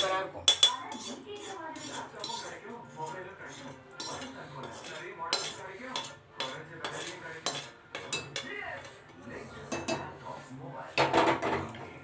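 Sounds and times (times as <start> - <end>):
metal spoon scraping a metal pan: 0.0 - 11.8.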